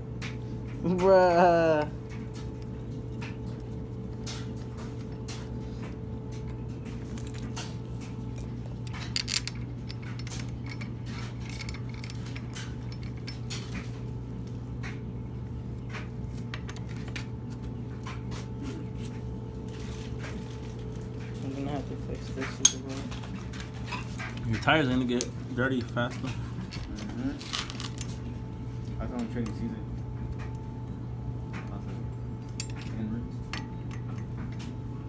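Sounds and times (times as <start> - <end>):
metal tools clinking: 8.3 - 13.8, 22.4 - 28.3, 32.4 - 34.5.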